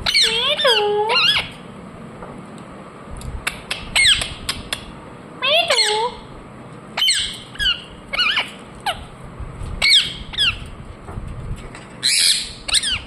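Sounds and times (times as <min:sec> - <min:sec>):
parrot squawking: 0:00.0 - 0:01.6, 0:05.4 - 0:06.2, 0:07.0 - 0:09.1, 0:09.8 - 0:10.6, 0:12.0 - 0:13.0.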